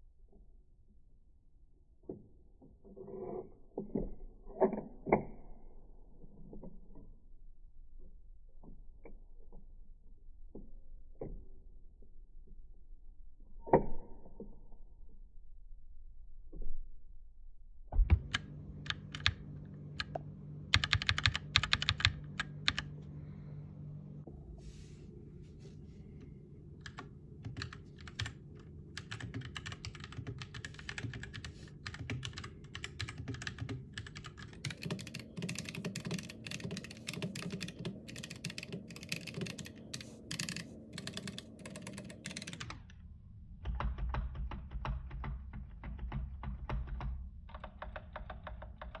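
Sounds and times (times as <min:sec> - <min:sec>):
steady low hum: 0:17.9 - 0:44.6
mechanical keyboard typing: 0:18.1 - 0:19.4, 0:20.0 - 0:22.9, 0:26.8 - 0:42.8, 0:43.7 - 0:49.0.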